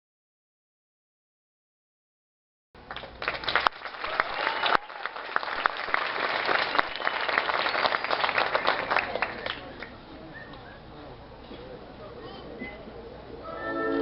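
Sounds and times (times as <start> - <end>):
audience applauding: 2.8 - 10.0
voices in crowd: 6.6 - 14.0.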